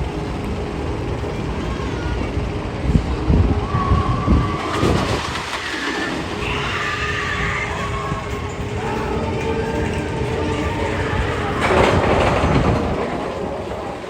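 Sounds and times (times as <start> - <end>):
hissing rush: 2.8 - 14.0.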